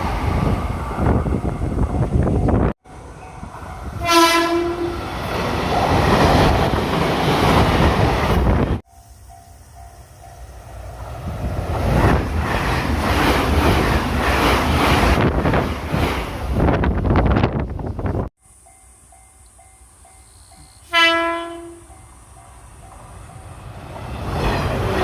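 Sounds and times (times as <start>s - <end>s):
train rumbling past: 0.0s - 25.0s
level-crossing warning bell: 1.9s - 4.9s, 8.8s - 10.7s, 18.6s - 23.6s
train horn blast: 3.9s - 5.0s, 20.8s - 21.9s.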